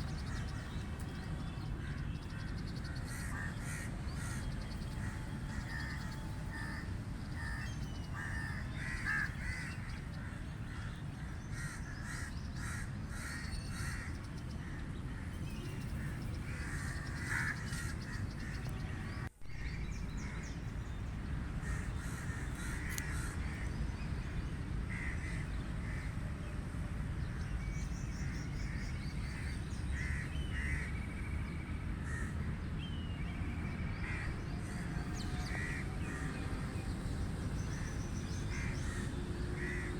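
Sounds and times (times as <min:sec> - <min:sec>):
low background rumble: 0:00.0 - 0:39.9
crows cawing: 0:05.5 - 0:10.9, 0:11.5 - 0:14.1, 0:16.5 - 0:18.2, 0:21.6 - 0:23.6, 0:35.5 - 0:36.2, 0:38.5 - 0:39.9.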